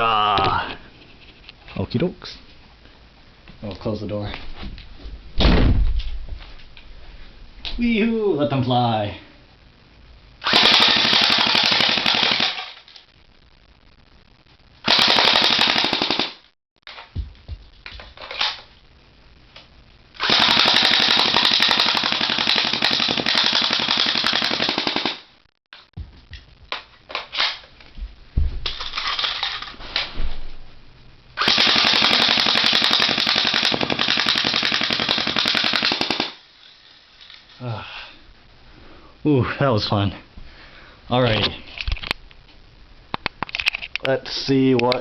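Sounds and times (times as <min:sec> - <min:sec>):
airsoft gun full-auto bursts: 0:10.4 - 0:12.8, 0:14.8 - 0:16.4, 0:20.2 - 0:25.3, 0:31.4 - 0:36.4.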